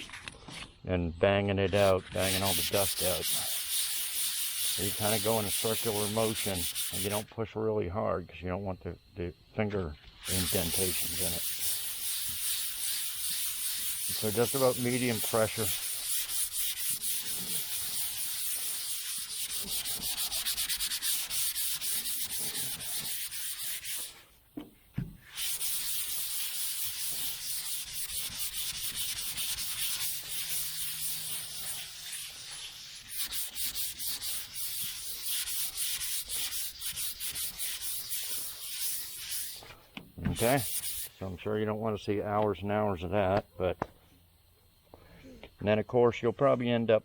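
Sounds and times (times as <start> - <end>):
sandpaper scratching on metal: 1.7 - 7.2, 10.2 - 24.2, 25.2 - 41.2.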